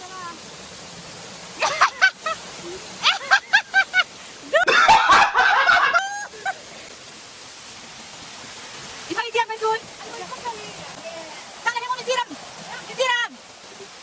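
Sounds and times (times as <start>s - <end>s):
waterfall rushing: 0.0s - 14.0s
group of people laughing: 4.6s - 6.6s.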